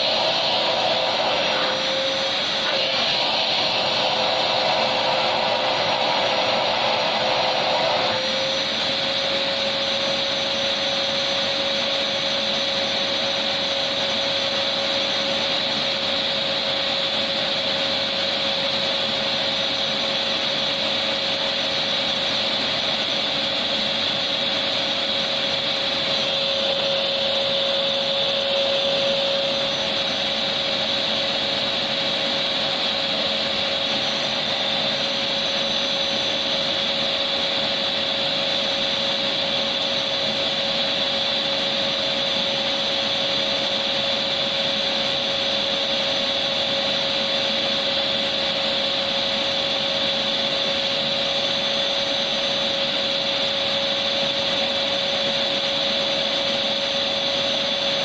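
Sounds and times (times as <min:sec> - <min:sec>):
vacuum cleaner motor running: 0:00.0 - 0:58.0.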